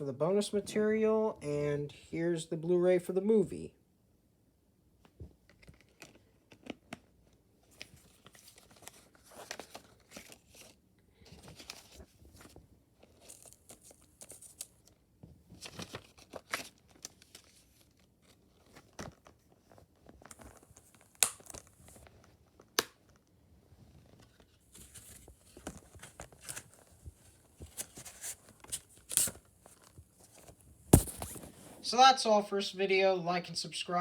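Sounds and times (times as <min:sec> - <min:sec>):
paper and plastic rustling: 0:05.5 - 0:31.9.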